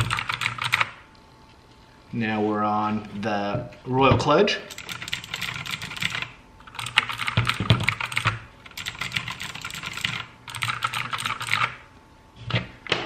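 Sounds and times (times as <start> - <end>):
fast typing on mechanical keyboard: 0.0 - 1.0, 4.7 - 11.8.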